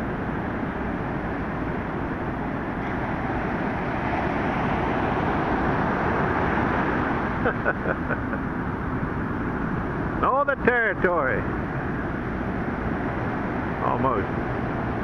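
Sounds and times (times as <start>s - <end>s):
heavy surf breaking: 3.0s - 9.0s.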